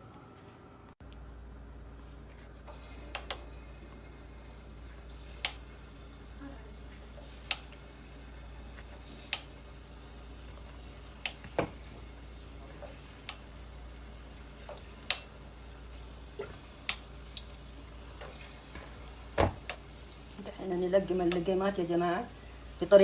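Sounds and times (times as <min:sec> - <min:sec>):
oil sizzling: 0:01.2 - 0:23.0.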